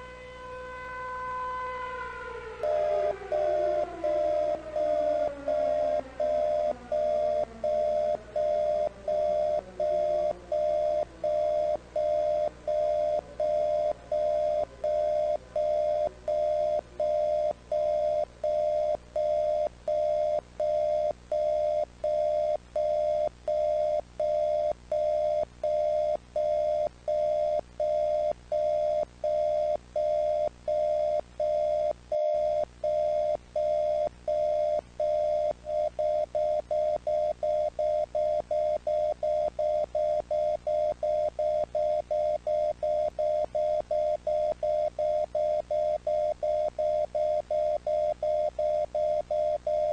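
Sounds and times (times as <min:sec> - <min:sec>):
siren winding down: 0:00.0 - 0:20.9
electronic warning beeps: 0:01.4 - 0:49.9.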